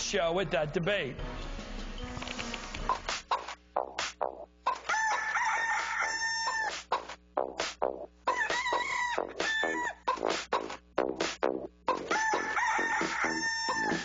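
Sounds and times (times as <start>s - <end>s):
chicken crowing: 4.7s - 7.1s, 8.2s - 10.6s, 11.9s - 14.0s
chicken clucking: 6.5s - 7.2s, 8.3s - 10.8s.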